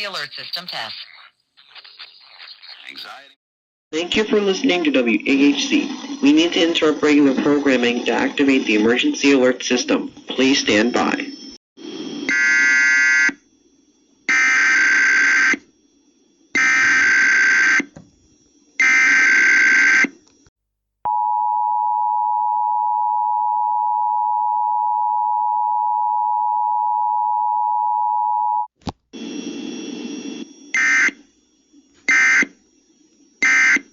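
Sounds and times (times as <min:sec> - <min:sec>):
harsh buzzing data bursts: 0:29.2 - 0:33.9.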